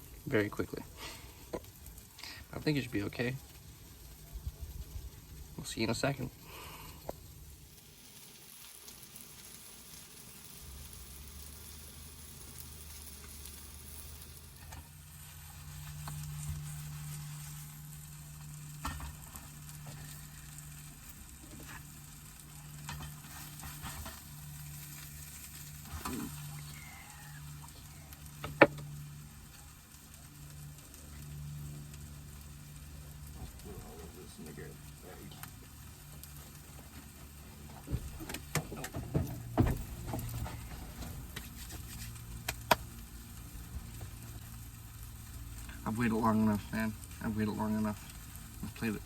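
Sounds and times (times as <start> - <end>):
low hum: 0.0 - 36.7
omelet sizzling in a pan: 0.0 - 49.0.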